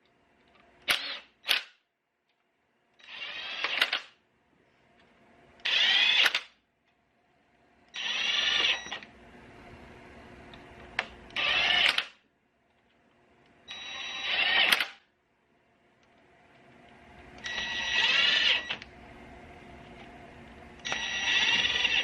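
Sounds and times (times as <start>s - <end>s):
impact wrench whining: 3.0s - 4.2s, 5.6s - 6.6s, 11.4s - 12.2s, 13.7s - 15.0s, 17.4s - 18.8s, 20.8s - 22.0s.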